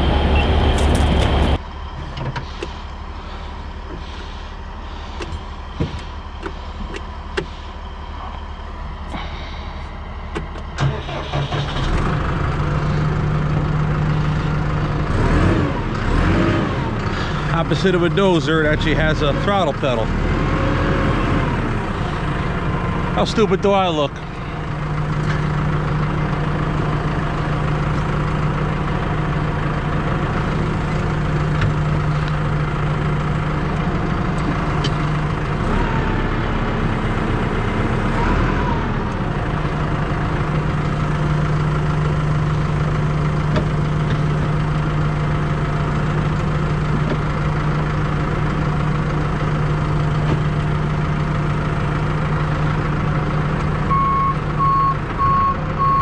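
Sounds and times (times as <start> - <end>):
tractor engine idling: 0.0 - 15.1, 16.9 - 20.1, 21.0 - 56.0.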